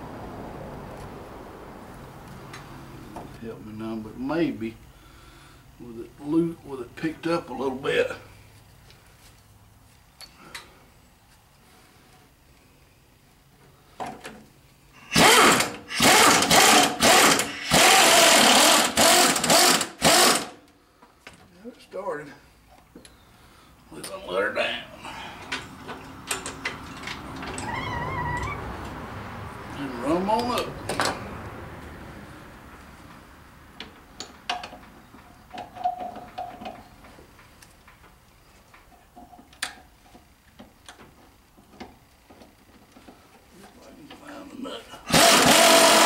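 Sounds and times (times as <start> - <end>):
power wrench running bolt in: 15.0 - 20.6, 45.1 - 46.0.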